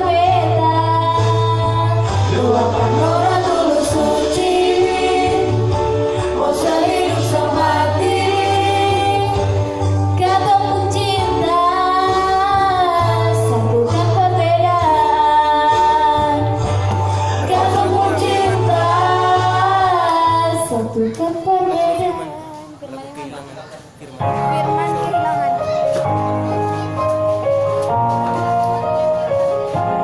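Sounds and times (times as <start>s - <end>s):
woman singing ballad: 0.0s - 16.7s, 17.4s - 22.8s
backing track with bass: 0.0s - 22.6s, 24.2s - 30.0s.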